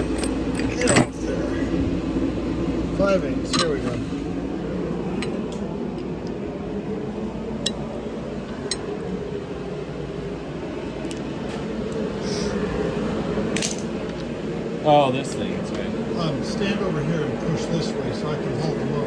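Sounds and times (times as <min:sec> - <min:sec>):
steady background hum: 0:00.0 - 0:19.0.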